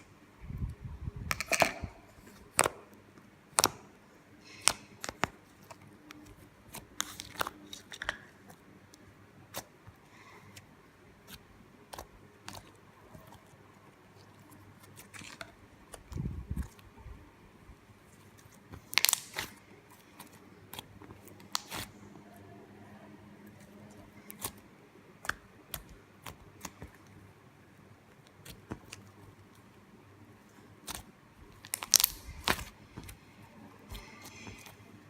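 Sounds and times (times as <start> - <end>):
slime clicking and popping: 18.8 - 19.5, 31.6 - 33.2.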